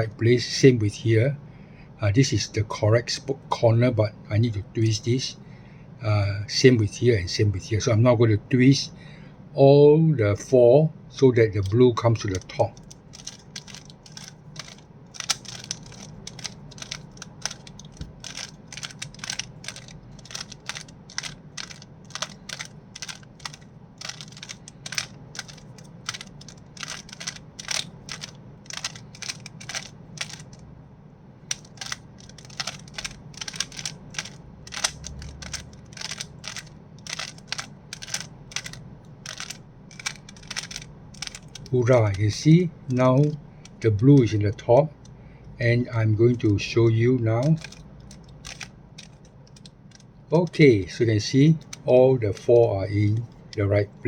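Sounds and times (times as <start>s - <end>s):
puzzle cube plastic clicking: 11.6s - 30.6s, 31.4s - 43.8s, 47.4s - 50.8s, 51.5s - 53.7s.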